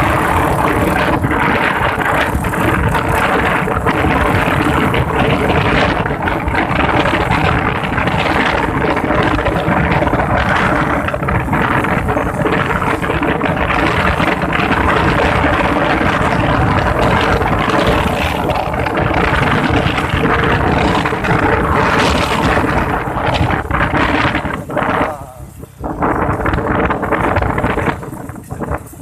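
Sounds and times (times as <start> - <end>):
vehicle engine running with rattle: 0.0 - 29.0
wind noise on microphone: 0.0 - 29.0.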